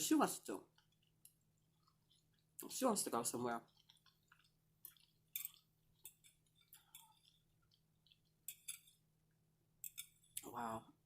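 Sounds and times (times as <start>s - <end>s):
chewing: 0.7s - 2.6s, 3.6s - 9.0s.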